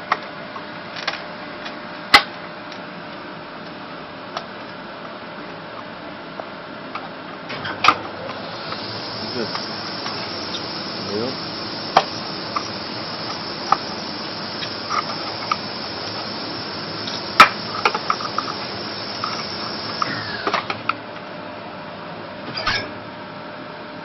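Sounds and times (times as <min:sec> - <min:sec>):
steady background hiss: 0:07.5 - 0:20.9.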